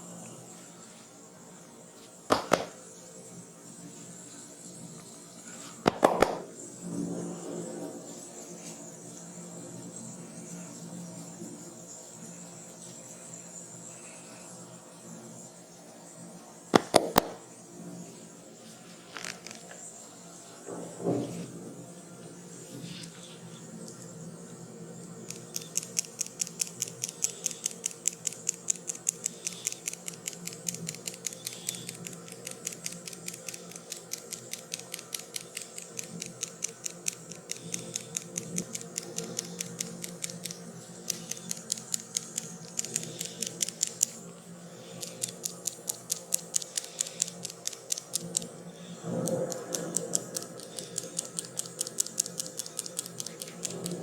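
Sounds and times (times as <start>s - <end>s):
rapid even clicking: 2.3s - 2.8s, 25.2s - 44.2s, 44.9s - 48.5s, 49.1s - 54.0s.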